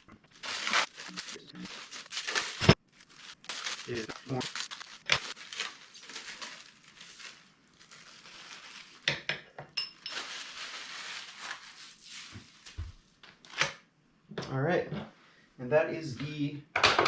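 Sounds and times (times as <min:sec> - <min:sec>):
packaging rustling: 0:00.0 - 0:09.1, 0:10.0 - 0:13.0.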